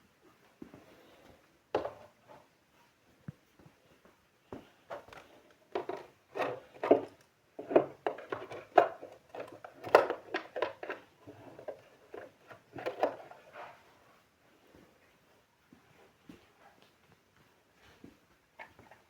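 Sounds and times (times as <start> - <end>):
small objects knocking and rattling: 4.9 - 13.3.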